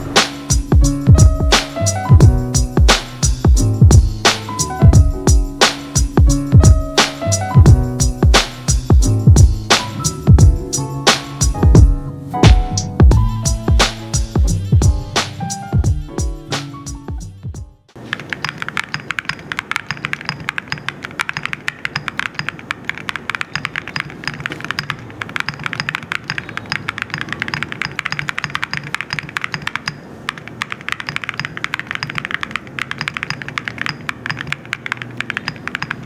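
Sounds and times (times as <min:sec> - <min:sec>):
mechanical keyboard typing: 0:18.0 - 0:36.0.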